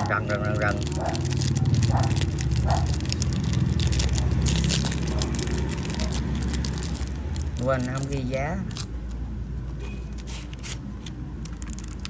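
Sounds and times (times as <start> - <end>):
street traffic rumble: 0.0 - 12.0.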